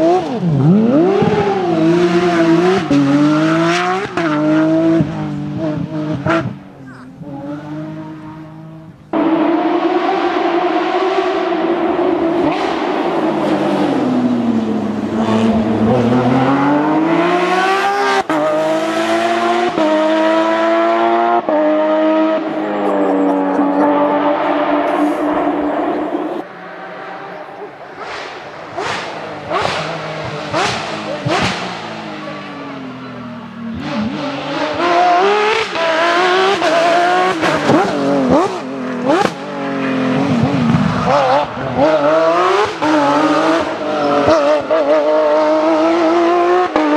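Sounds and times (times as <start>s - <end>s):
car engine accelerating hard: 0.0s - 46.9s.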